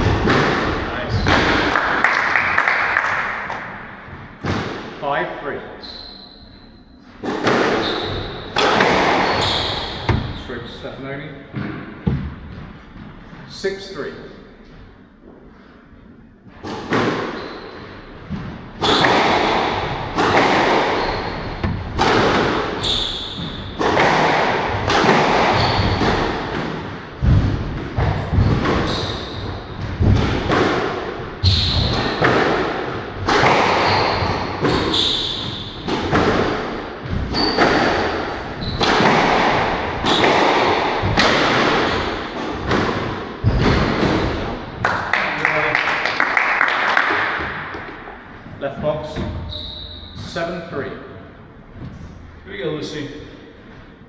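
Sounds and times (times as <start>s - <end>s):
squash ball hits echoing: 0.0s - 5.0s, 7.2s - 10.9s, 11.5s - 13.2s, 16.6s - 17.4s, 18.2s - 45.4s, 46.0s - 48.4s.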